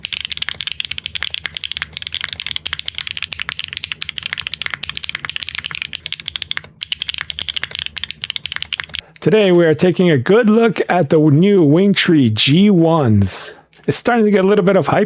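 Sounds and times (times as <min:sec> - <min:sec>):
fast typing on mechanical keyboard: 0:00.0 - 0:09.0.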